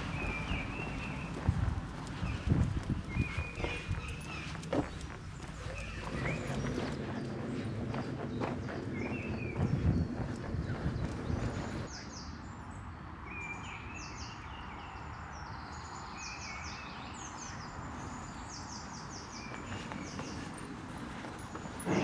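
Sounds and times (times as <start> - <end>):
footsteps on trail: 0.0 - 11.9, 19.1 - 22.0
songbirds singing: 0.0 - 22.0.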